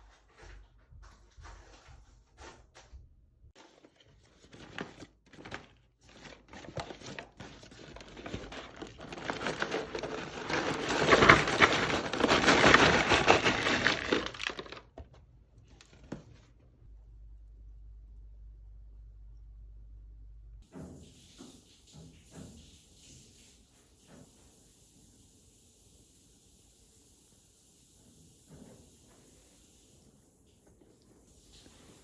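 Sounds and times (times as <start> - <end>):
wrapping crinkling: 3.6 - 15.1.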